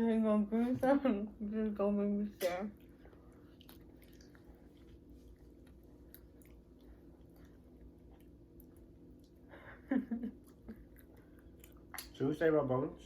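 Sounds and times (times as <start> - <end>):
steady low hum: 0.0 - 13.0
chewing and mouth clicks: 2.4 - 9.5, 10.4 - 12.2.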